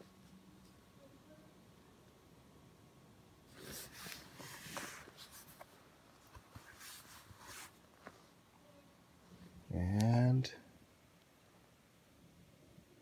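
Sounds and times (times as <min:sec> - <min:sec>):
rustling handling noise: 0:03.5 - 0:08.4.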